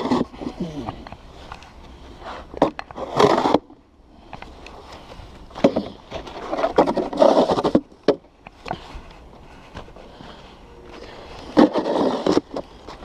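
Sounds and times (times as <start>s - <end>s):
snow shovel scraping snow: 5.8s - 7.7s, 8.8s - 13.0s.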